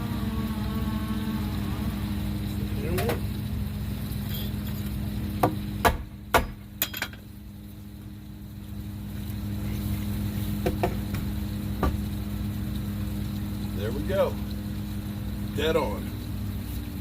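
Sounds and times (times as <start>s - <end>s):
steady low hum: 0.0s - 17.0s
hammer knocking on wood: 5.4s - 6.6s.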